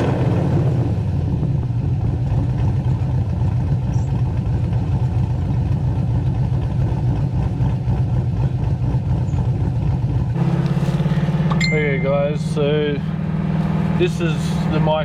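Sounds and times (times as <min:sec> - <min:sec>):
car engine rumbling: 0:00.0 - 0:15.0.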